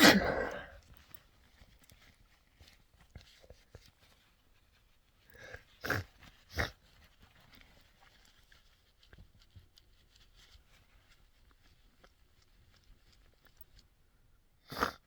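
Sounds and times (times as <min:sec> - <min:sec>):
short breath in: 0:00.0 - 0:00.7
person sneezing: 0:00.0 - 0:00.8.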